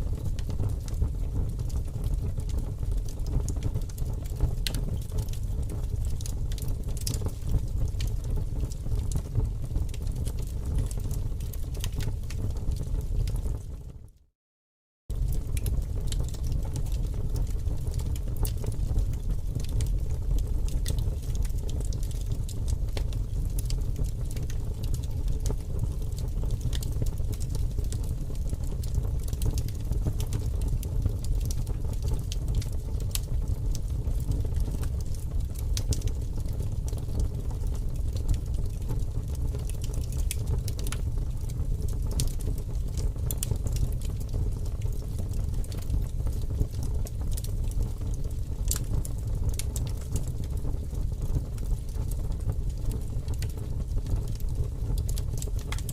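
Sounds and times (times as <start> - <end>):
fire rumbling: 0.0 - 13.8, 15.1 - 55.9
burning wood crackling: 38.4 - 42.4, 47.1 - 48.9.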